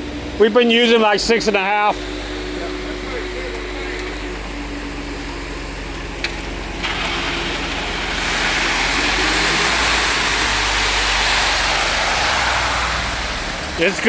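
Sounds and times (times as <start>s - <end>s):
truck engine humming: 0.0s - 14.0s
concrete sliding down chute: 6.8s - 14.0s.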